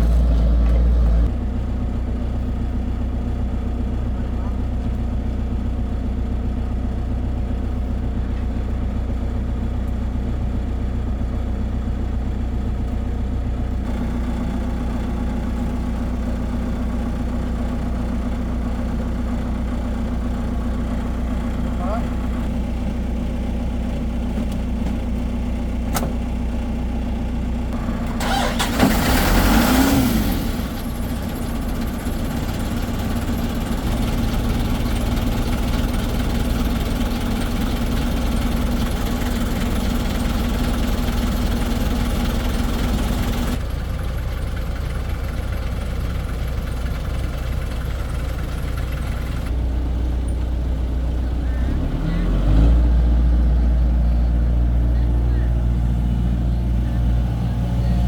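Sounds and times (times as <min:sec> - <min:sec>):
heavy diesel engine running: 0:00.0 - 0:58.0.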